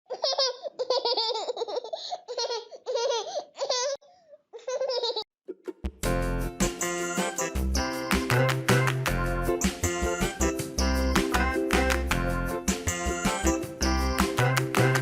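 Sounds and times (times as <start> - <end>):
baby laughing: 0.1 - 5.8
bright children's music: 5.6 - 15.0.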